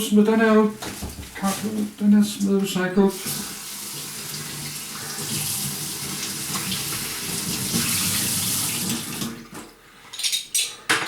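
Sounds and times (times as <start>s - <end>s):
tap running into sink: 4.3s - 9.7s.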